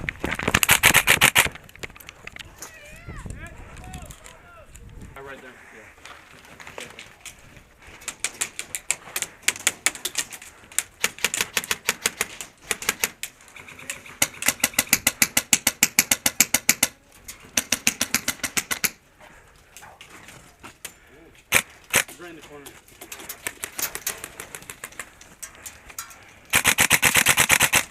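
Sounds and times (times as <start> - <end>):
airsoft guns firing: 0.6 - 1.5, 11.0 - 13.2, 14.0 - 19.0, 21.5 - 22.1, 26.5 - 27.9.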